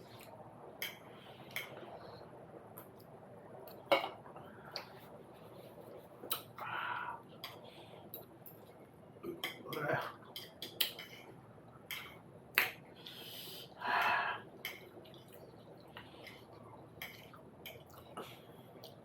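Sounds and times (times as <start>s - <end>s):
cutlery clicking against dishes: 9.3s - 11.3s, 11.9s - 12.8s.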